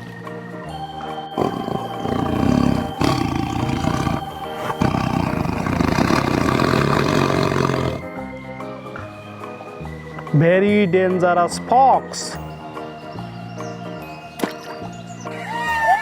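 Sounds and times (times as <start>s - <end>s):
tiger roaring: 1.4s - 8.1s.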